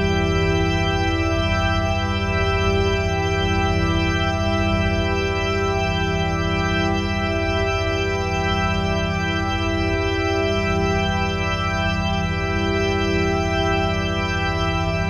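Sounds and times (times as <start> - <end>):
electronic organ sustained chord: 0.0 - 15.0.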